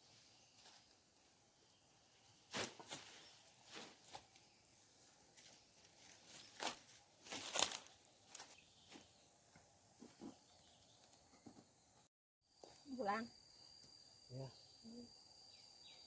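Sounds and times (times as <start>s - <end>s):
dry vegetation rustling and crunching: 2.2s - 9.1s.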